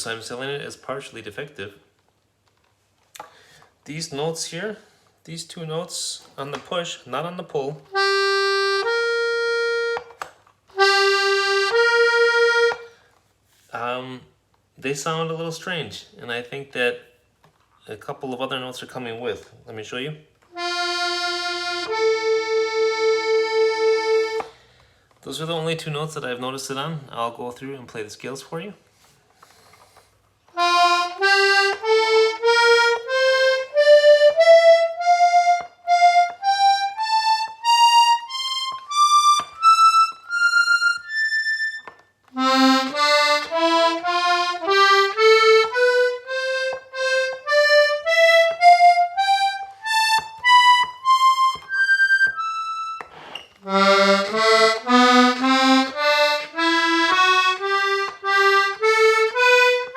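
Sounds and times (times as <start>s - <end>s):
accordion playing scales: 7.8s - 13.0s, 20.5s - 24.6s, 30.5s - 59.9s.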